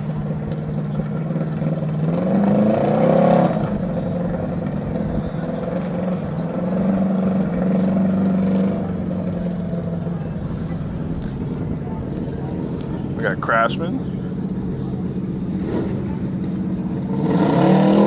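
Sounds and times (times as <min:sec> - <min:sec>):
lawn mower engine revving: 0:15.5 - 0:18.0.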